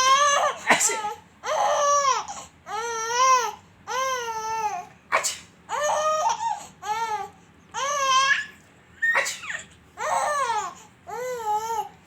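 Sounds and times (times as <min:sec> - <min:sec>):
baby squealing with laughter: 0:07.8 - 0:10.7.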